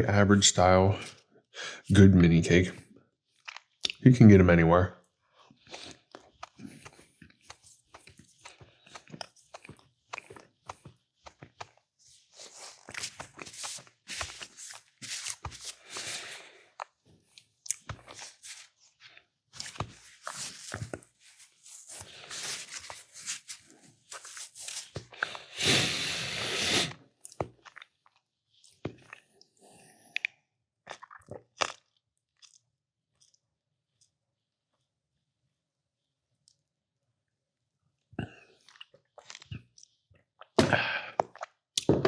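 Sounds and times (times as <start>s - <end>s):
plastic packaging crinkling: 12.5s - 16.4s, 18.1s - 18.7s, 19.6s - 25.0s.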